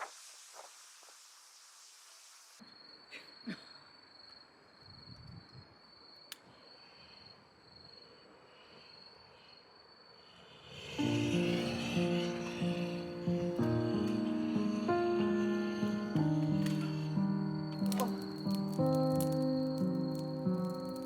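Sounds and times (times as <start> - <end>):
crickets chirping: 0.0 - 21.0
background music: 11.0 - 21.0.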